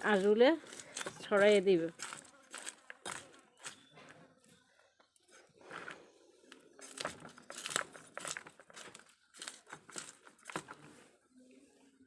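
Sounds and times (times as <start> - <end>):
blade scraping fish scales: 0.0 - 3.9, 6.8 - 10.8.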